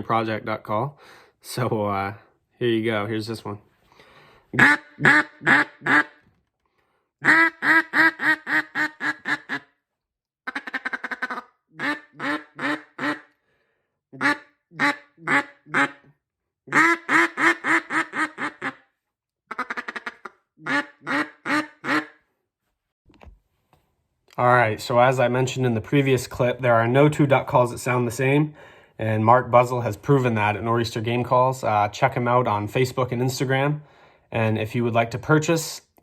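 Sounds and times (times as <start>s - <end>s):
duck call quacking: 4.6s - 6.2s, 7.2s - 9.7s, 10.5s - 13.3s, 14.2s - 16.1s, 16.7s - 18.8s, 19.5s - 22.2s.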